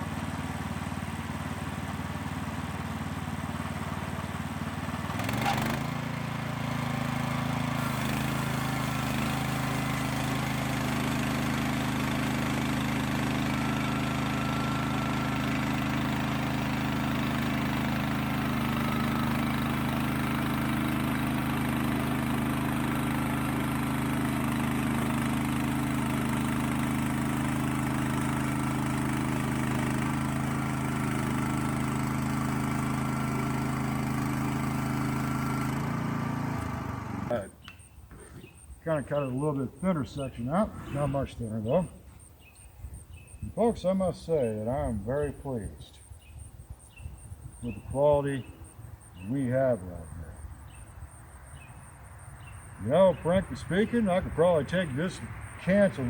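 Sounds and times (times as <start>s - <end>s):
sawmill engine running: 0.0s - 42.2s, 52.4s - 56.0s
blade sawing through log: 7.8s - 8.6s.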